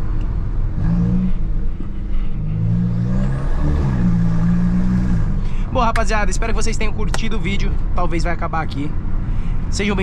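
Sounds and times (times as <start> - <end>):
car engine accelerating: 0.0 - 6.0.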